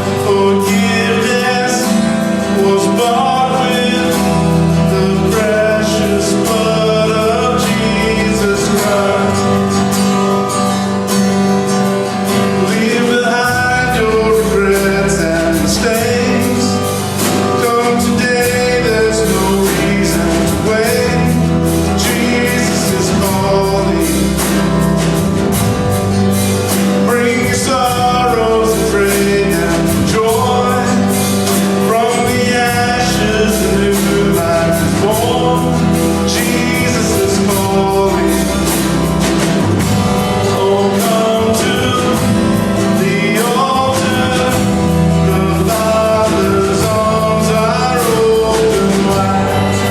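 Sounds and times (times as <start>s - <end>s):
guitar accompaniment: 0.0s - 49.9s
man singing: 0.0s - 49.9s.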